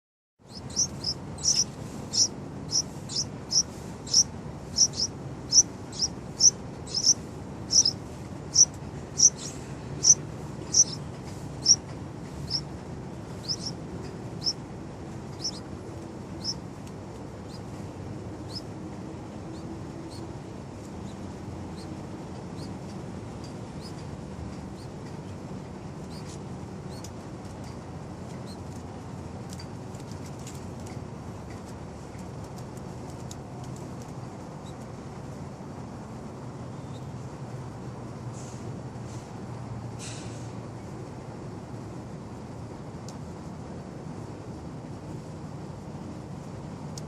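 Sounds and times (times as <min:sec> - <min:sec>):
bird chicks chirping: 0:00.4 - 0:14.6, 0:15.2 - 0:15.8, 0:16.4 - 0:16.6, 0:17.4 - 0:17.7, 0:18.4 - 0:18.7, 0:19.5 - 0:20.3, 0:21.0 - 0:21.9, 0:22.5 - 0:22.8, 0:26.0 - 0:27.1
low background hum: 0:00.4 - 0:47.0.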